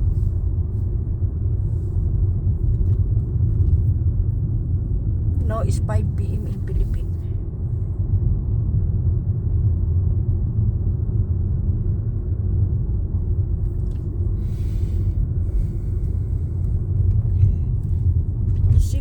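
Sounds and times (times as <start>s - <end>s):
car cabin road rumble: 0.0s - 19.0s.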